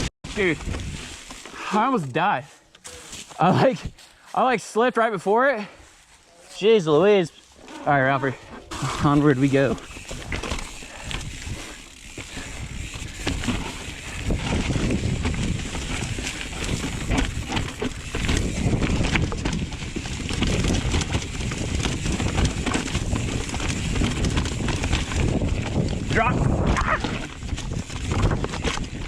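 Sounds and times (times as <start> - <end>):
wind noise: 0.0 - 1.2, 8.8 - 29.0.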